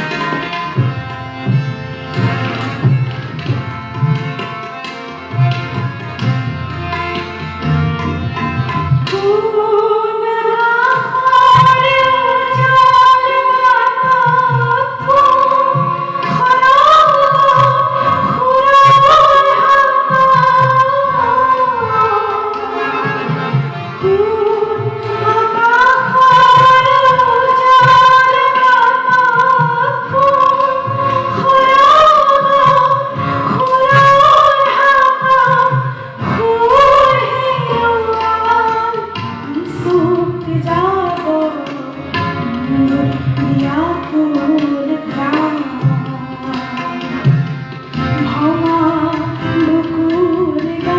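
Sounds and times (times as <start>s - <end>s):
woman singing slow song: 31.4s - 38.9s.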